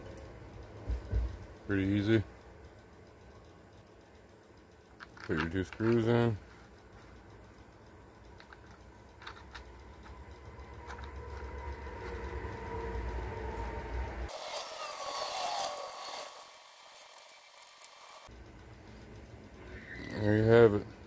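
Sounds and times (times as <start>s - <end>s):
screwdriver clicking and scraping: 4.9s - 6.9s, 8.2s - 12.5s, 14.3s - 18.3s.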